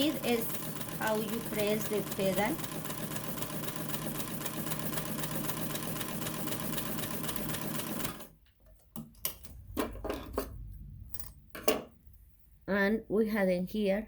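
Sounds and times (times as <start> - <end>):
sewing machine stitching: 0.0 - 8.4.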